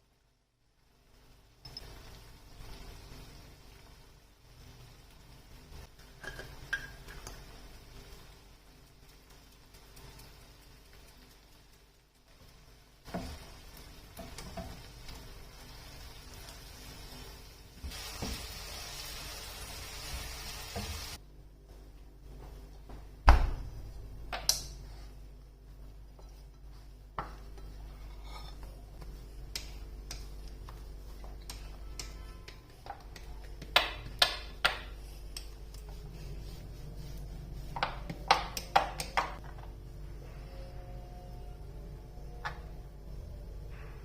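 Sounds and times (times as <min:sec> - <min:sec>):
food sizzling in a pan: 0:00.8 - 0:21.2
metal utensil knocking on pan: 0:37.8 - 0:39.4.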